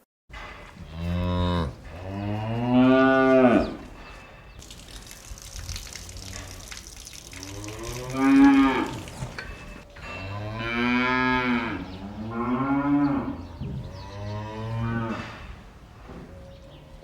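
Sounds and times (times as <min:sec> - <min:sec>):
cattle mooing: 0:00.8 - 0:04.0, 0:05.8 - 0:15.4.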